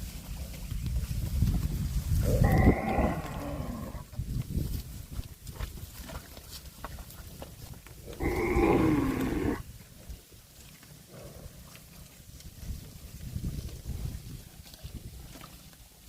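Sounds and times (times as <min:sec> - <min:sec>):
cow mooing: 0:02.3 - 0:04.0, 0:08.2 - 0:09.6.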